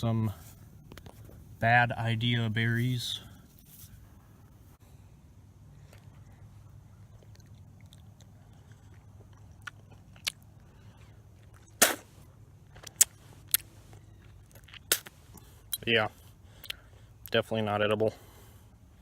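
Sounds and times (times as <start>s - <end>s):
low steady hum: 0.0s - 19.0s.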